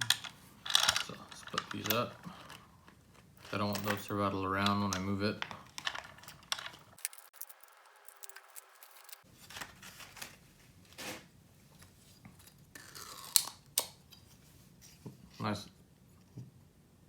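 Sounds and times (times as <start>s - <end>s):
small parts clicking and tapping: 0.0s - 9.3s
packaging rustling: 6.0s - 11.2s.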